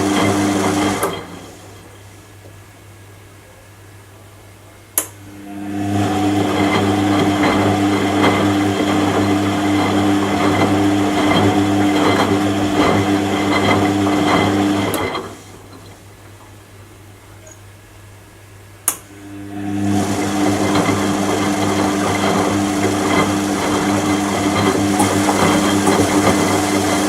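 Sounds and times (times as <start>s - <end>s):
washing machine drum humming: 0.0s - 3.0s, 4.5s - 18.1s, 18.7s - 27.0s.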